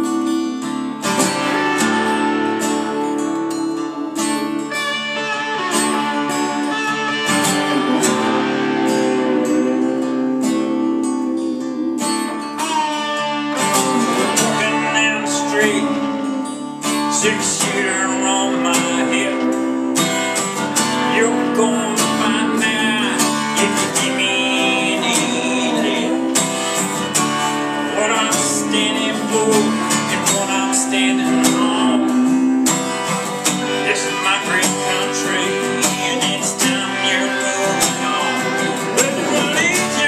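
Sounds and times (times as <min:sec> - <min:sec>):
strummed acoustic guitar: 0:00.0 - 0:40.0.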